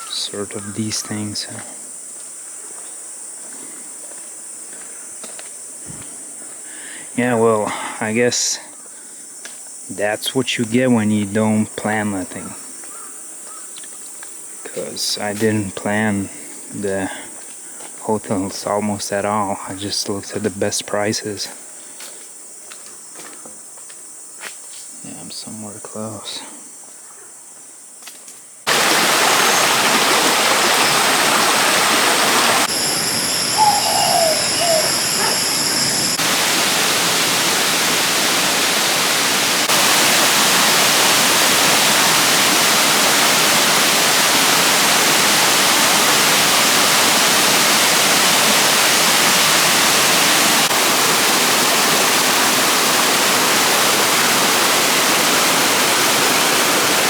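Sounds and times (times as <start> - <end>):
high steady buzz: 28.7 - 46.7
waterfall rushing: 28.7 - 57.0.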